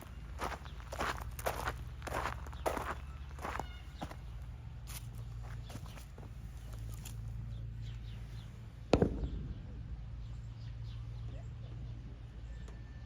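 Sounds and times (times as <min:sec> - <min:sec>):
bird chirps: 0:02.1 - 0:04.3
low rumble: 0:07.3 - 0:12.8.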